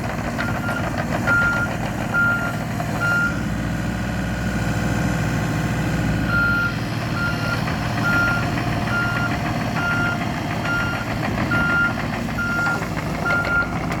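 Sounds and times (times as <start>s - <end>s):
diesel engine running: 0.0s - 14.0s
excavator travel alarm beeping: 0.3s - 3.4s, 6.3s - 14.0s.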